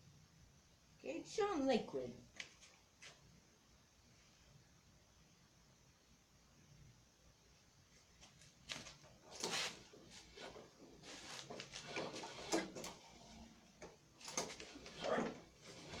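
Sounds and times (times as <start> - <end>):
rustling: 7.9 - 13.5.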